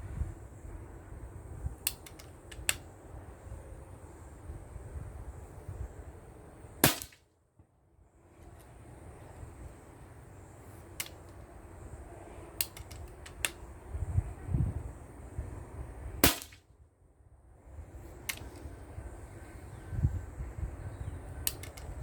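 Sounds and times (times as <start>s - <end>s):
wind on microphone: 0.0s - 1.8s, 13.1s - 16.3s, 17.6s - 22.0s
air rifle shot: 6.8s - 7.2s, 16.2s - 16.6s
light clicks: 21.4s - 22.0s.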